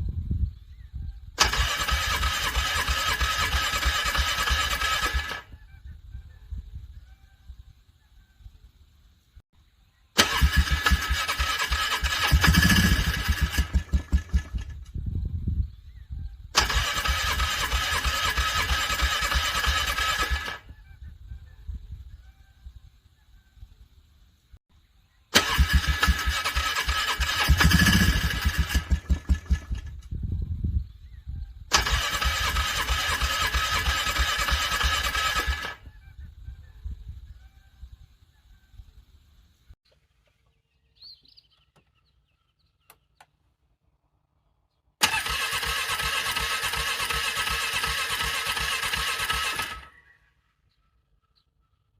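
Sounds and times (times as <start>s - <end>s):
engine cranking by starter: 1.4s - 5.6s, 10.2s - 15.0s, 16.5s - 20.7s, 25.3s - 30.1s, 31.7s - 35.9s, 45.0s - 50.2s
engine firing and sputtering: 1.4s - 5.6s, 10.2s - 15.1s, 16.5s - 20.7s, 25.4s - 30.2s, 31.7s - 35.9s, 45.0s - 50.1s
loud harsh grinding: 25.4s - 29.8s.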